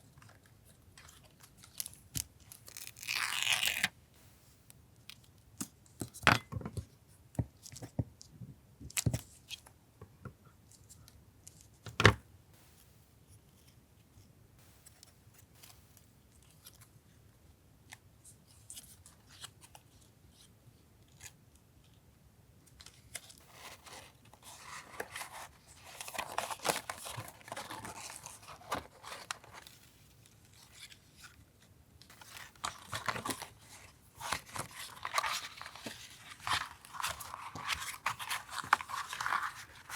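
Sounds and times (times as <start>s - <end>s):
paper rustling and tearing: 23.4s - 29.8s, 32.1s - 39.9s.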